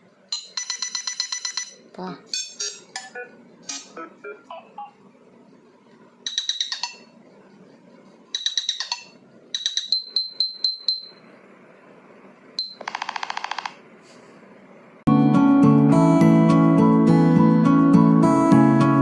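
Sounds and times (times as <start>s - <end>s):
rapid electronic clicks: 6.3s - 7.1s, 8.3s - 11.0s, 12.6s - 13.8s.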